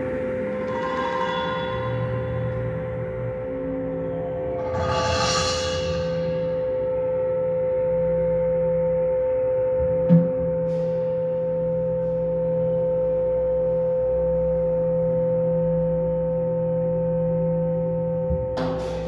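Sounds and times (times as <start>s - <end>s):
metal gong ringing: 0.4s - 3.6s, 4.3s - 7.0s.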